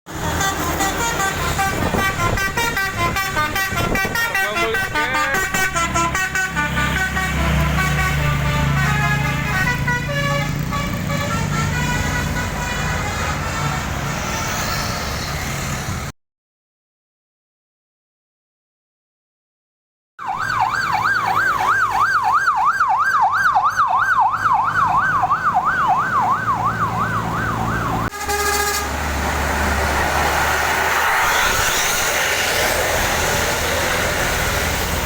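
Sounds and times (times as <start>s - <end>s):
multi-trumpet bus horn melody: 0.1s - 14.4s, 28.0s - 29.5s
bus engine: 0.1s - 16.1s, 20.5s - 35.0s.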